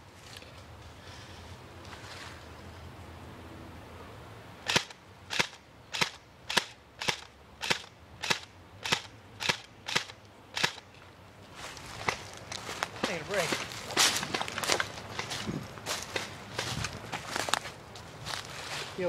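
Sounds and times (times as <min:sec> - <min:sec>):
airsoft gun single shots: 0:04.7 - 0:10.8.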